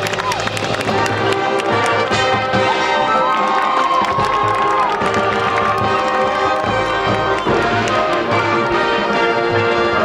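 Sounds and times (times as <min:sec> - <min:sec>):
crowd cheering and whooping: 0:00.0 - 0:08.2
marching band music: 0:00.0 - 0:10.0.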